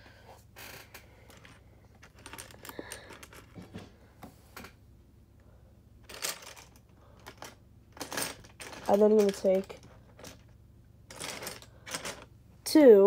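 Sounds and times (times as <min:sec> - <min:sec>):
plastic bricks clicking and rattling: 0:00.8 - 0:03.6, 0:06.0 - 0:12.3.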